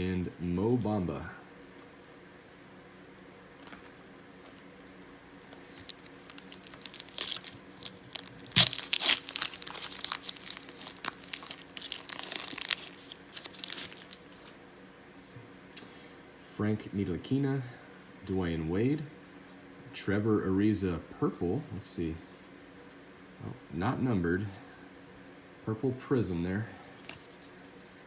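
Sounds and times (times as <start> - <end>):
wrapper tearing and crinkling: 5.3 - 14.6.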